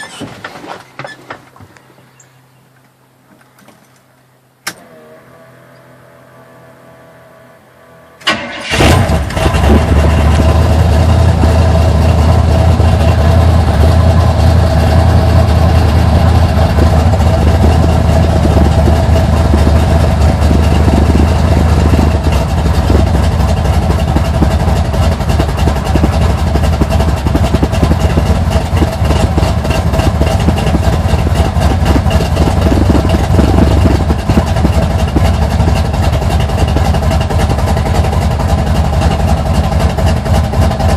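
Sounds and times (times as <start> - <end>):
engine starting and rough idle: 8.2 - 40.9.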